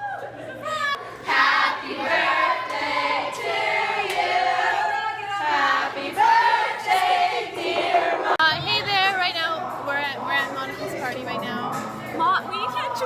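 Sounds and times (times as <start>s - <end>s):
group of voices singing: 1.0s - 8.8s.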